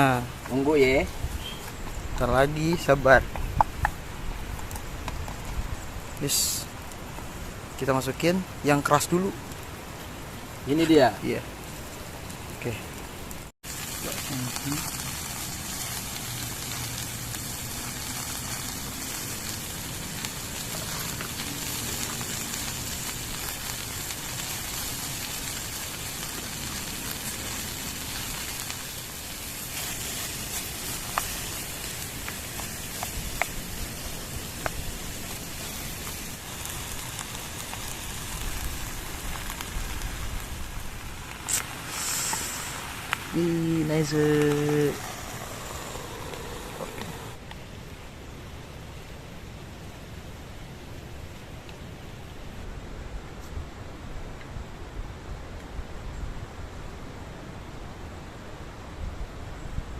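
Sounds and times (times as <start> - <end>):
vegetables sizzling in oil: 13.6 - 47.4.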